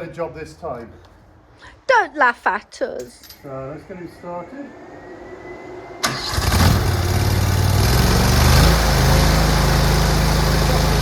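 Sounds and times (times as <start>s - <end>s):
skid steer engine running: 6.0s - 11.0s.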